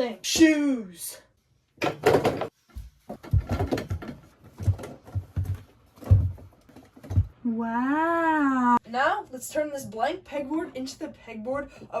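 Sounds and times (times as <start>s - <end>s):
dull thumps of shoes: 1.8s - 7.4s
shoes clattering: 1.8s - 7.4s.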